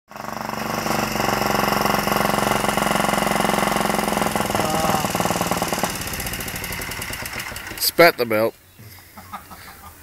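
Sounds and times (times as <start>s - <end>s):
lawn mower engine running: 0.1s - 8.6s.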